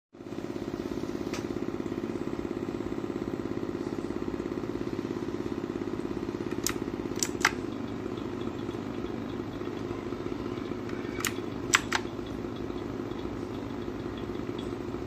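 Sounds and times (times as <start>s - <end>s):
low pulsing hum: 0.6s - 15.0s
sharp clicks: 6.4s - 9.4s, 10.8s - 14.7s.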